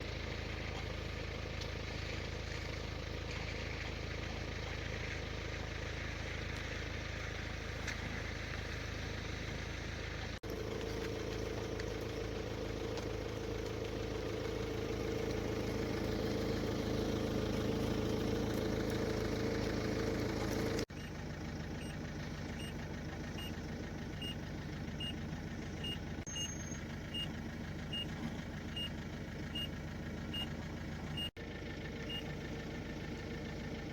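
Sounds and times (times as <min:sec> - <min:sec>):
low mechanical hum: 0:00.0 - 0:33.9.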